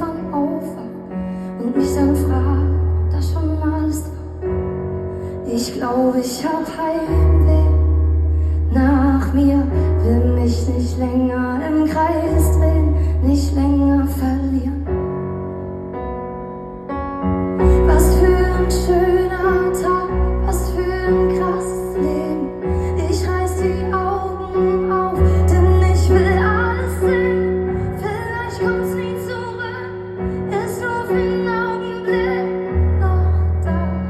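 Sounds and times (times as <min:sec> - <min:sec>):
woman singing: 0:00.0 - 0:04.4, 0:05.4 - 0:14.9, 0:17.6 - 0:34.0
piano chords: 0:00.0 - 0:34.0.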